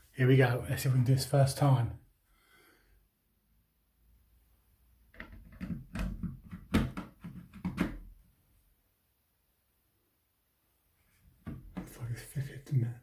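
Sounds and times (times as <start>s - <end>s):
plastic clicks and knocks: 5.1s - 8.1s.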